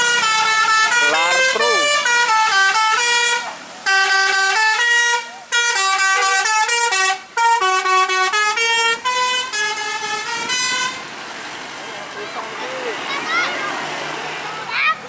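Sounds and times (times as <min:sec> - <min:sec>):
musical bus horn tune: 0:00.0 - 0:11.2.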